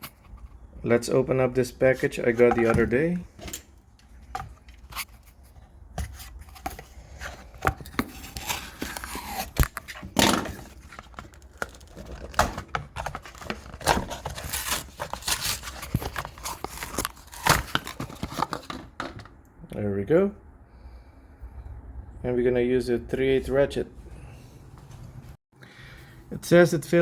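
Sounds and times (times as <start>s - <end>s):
packaging tearing and crinkling: 8.0s - 18.7s.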